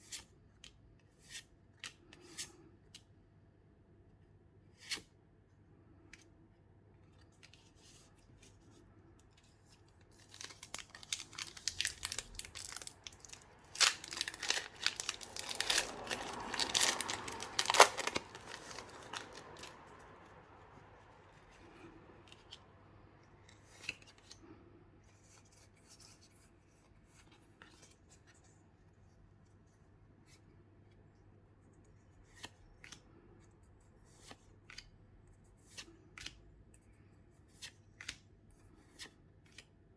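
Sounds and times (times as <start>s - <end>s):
packaging tearing and crinkling: 10.2s - 19.8s.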